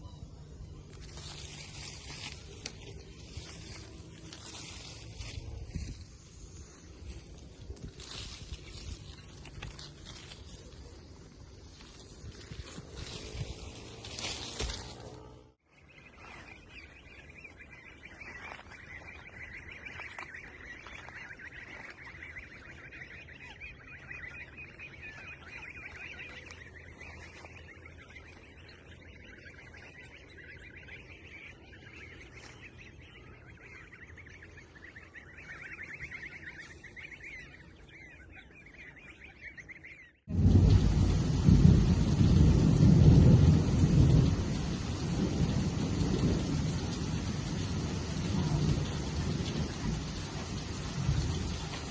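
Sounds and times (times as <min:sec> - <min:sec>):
rapid trilling animal calls: 0:15.8 - 0:40.3.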